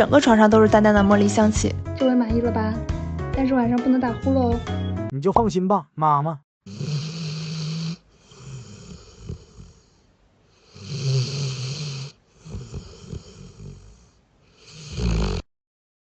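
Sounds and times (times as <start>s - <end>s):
dog snoring: 6.7s - 10.0s, 10.6s - 15.5s.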